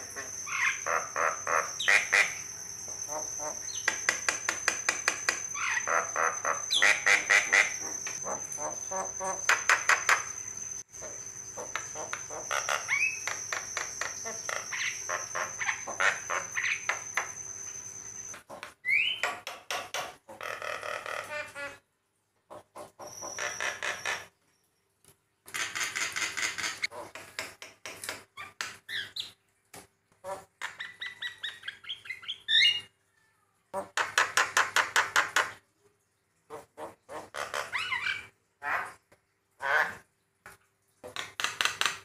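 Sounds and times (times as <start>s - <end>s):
high-pitched whine: 0.0s - 18.4s.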